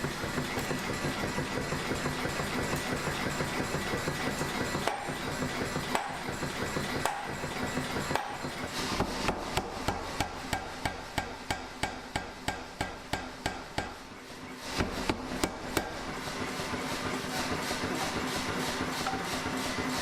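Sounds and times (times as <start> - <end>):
hammer striking metal on anvil: 4.8 - 5.2, 5.9 - 14.0, 19.0 - 19.5.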